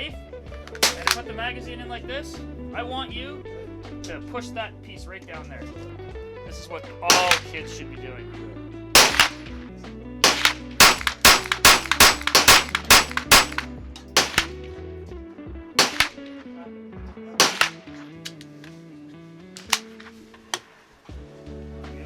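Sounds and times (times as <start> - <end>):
rifle firing semi-automatic shots: 0.7 - 1.2, 7.1 - 7.5, 9.0 - 9.5, 10.2 - 14.6, 15.8 - 16.4, 17.4 - 18.4, 19.6 - 20.0
background music: 7.1 - 7.7, 8.5 - 14.6, 15.8 - 16.4, 21.2 - 22.0.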